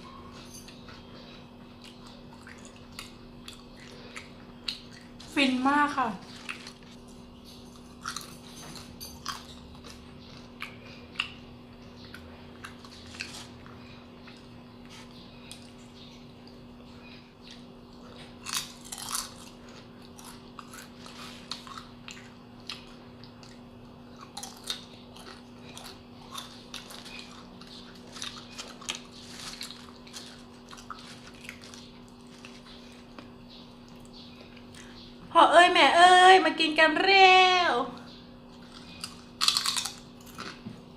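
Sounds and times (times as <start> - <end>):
crunching and chewing chips: 0.0 - 35.2, 38.0 - 40.9
faint steady hum: 0.0 - 40.9.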